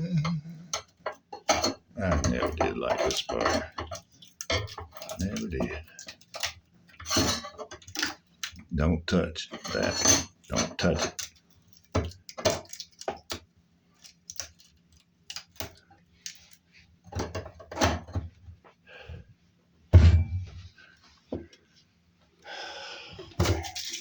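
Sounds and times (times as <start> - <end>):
tools clattering: 1.0 - 5.8
heavy thump: 19.9 - 20.7.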